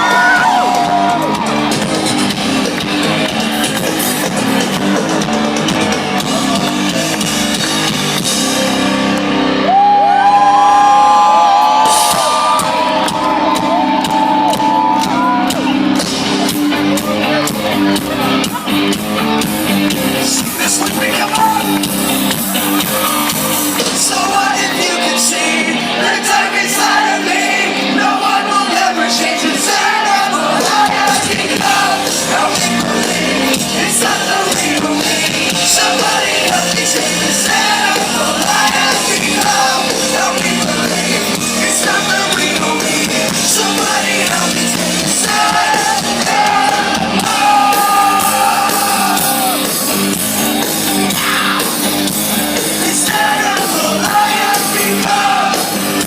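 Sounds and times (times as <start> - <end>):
live hard rock band: 0.0 - 56.0
person singing and shouting: 20.3 - 21.8.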